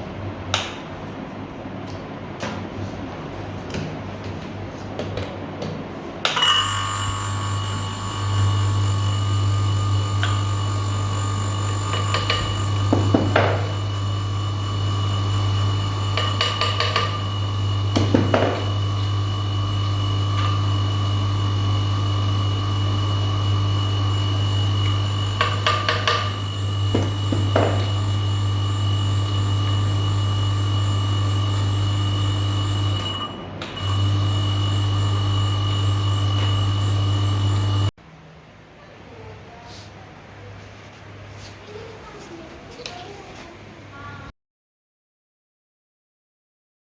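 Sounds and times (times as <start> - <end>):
electric water pump motor humming: 6.6 - 38.0.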